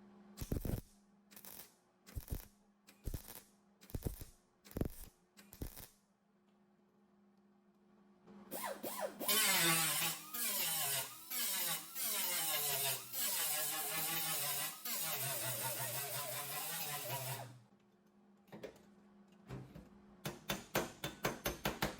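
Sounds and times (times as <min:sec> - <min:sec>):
angle grinder grinding metal: 0:08.9 - 0:17.5.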